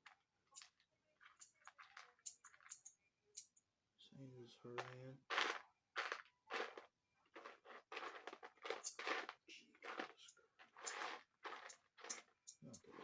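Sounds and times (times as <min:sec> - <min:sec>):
plastic crinkling and rustling: 0:04.8 - 0:13.0.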